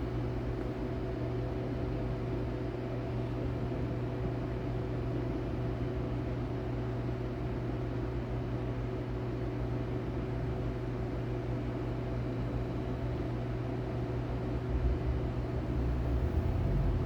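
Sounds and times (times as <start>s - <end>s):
machine hum: 14.2s - 17.0s
deep low rumble: 14.6s - 17.0s
low electrical drone: 14.6s - 17.0s.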